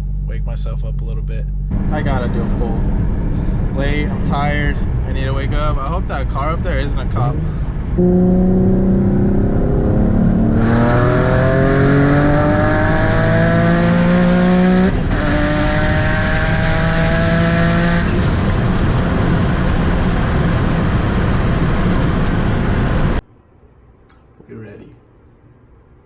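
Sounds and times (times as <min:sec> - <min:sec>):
steady rushing noise: 0:01.7 - 0:13.4
car engine revving at full throttle: 0:01.7 - 0:23.2.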